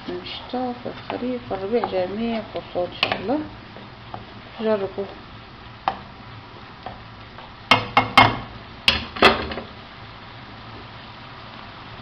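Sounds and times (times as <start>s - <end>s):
utensil knocking against pan: 7.7s - 9.4s.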